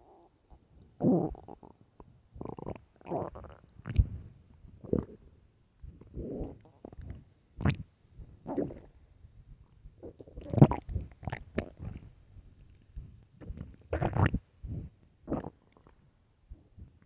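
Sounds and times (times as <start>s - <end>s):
stomach growling: 0.0s - 4.2s, 4.8s - 5.2s, 5.9s - 7.8s, 8.4s - 9.0s, 10.0s - 12.1s, 12.7s - 16.0s.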